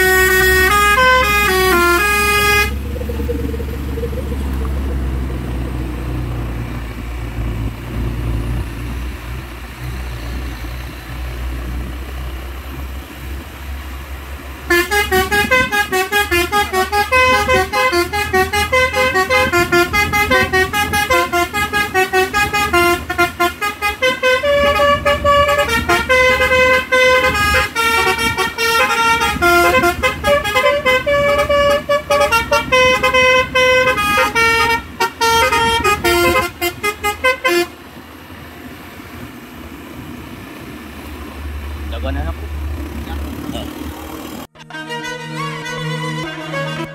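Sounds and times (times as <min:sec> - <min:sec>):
multi-tone horn playing tune: 0:00.0 - 0:03.0, 0:14.7 - 0:37.8, 0:44.6 - 0:46.9
truck engine rumbling: 0:00.0 - 0:46.9.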